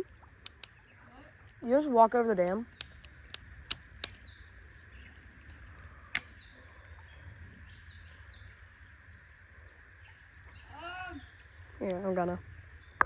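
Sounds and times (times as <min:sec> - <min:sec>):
steady outdoor hiss: 0:00.0 - 0:13.0
sharp click: 0:00.4 - 0:00.8, 0:02.8 - 0:04.3, 0:05.5 - 0:06.4.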